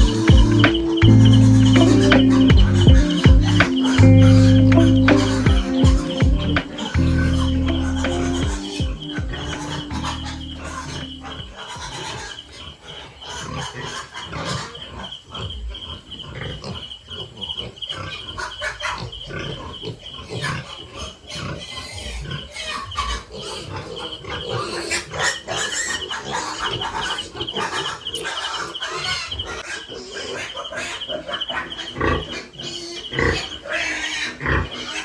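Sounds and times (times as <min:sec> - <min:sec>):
high fast-pulsing chirp: 0:00.0 - 0:11.6
pigs grunting: 0:00.0 - 0:35.0.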